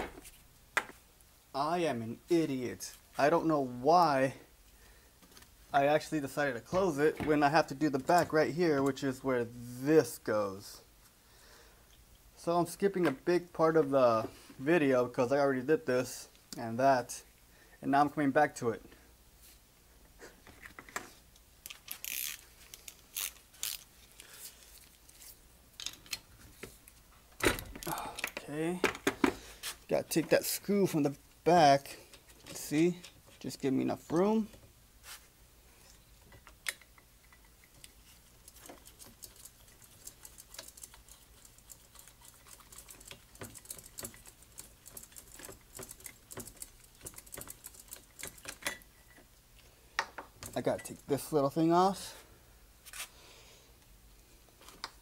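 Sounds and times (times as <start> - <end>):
hand tool clicking on metal parts: 36.4 - 49.2.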